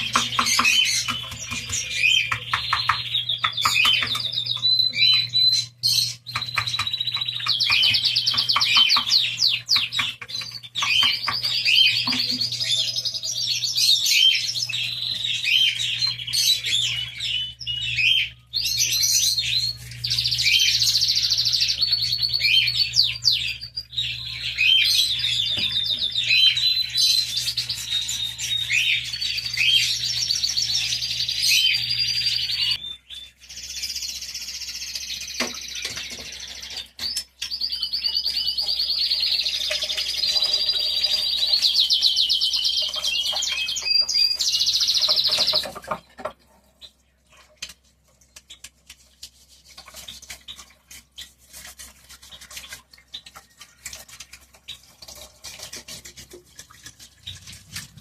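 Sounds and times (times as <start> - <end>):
small birds chirping and twittering: 0.0 - 58.0.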